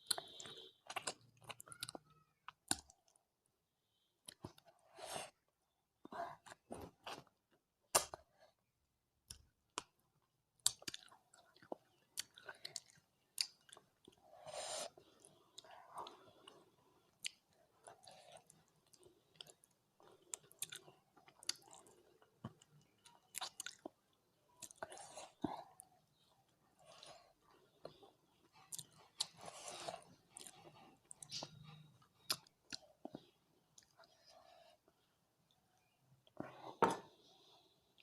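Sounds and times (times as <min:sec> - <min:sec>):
wet chewing: 0:14.9 - 0:34.2.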